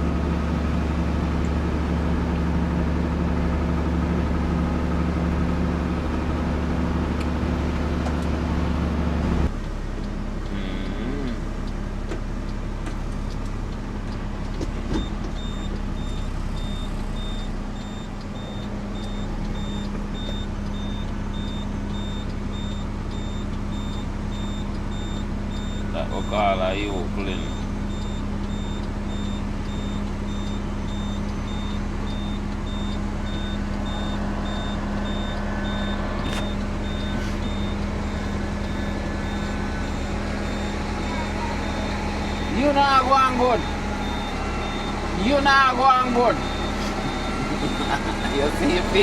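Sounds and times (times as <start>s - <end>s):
truck engine running: 0.0s - 49.0s
high electronic beep tone: 15.0s - 49.0s.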